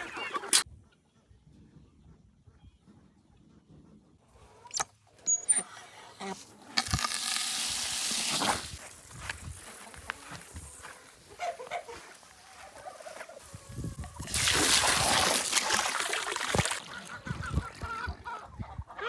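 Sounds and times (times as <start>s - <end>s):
chickens clucking: 0.0s - 0.6s, 9.1s - 19.0s.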